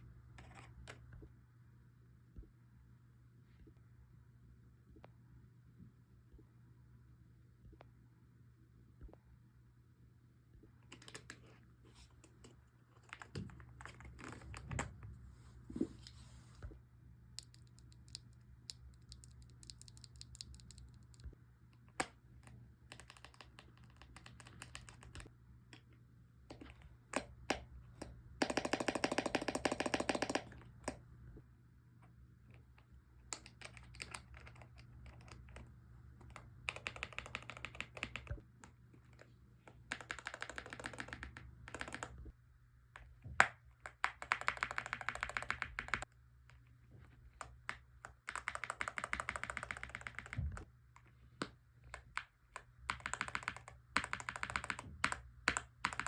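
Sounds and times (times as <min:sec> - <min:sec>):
mechanical keyboard typing: 0:17.4 - 0:21.3, 0:22.9 - 0:25.3, 0:28.4 - 0:30.6, 0:33.3 - 0:35.6, 0:36.3 - 0:38.4, 0:39.9 - 0:42.3, 0:43.8 - 0:46.1, 0:47.4 - 0:50.7, 0:51.9 - 0:56.0.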